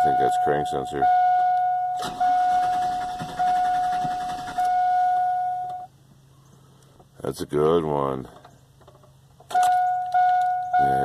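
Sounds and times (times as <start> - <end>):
dashboard warning chime: 0.0 - 5.9, 9.5 - 11.0
engine cranking on starter: 2.0 - 4.9.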